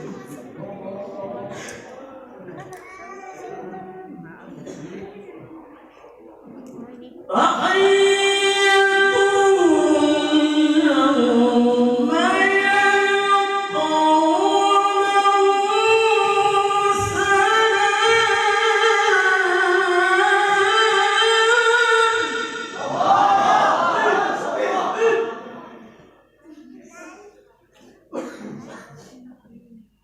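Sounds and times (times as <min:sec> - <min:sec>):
man reciting melodically: 0:07.3 - 0:25.8.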